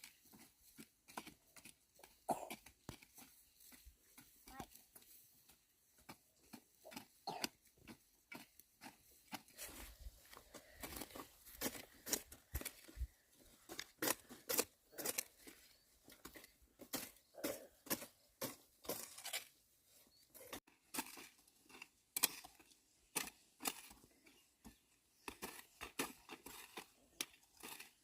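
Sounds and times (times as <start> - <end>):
hand tool scraping wood: 0.0 - 19.6.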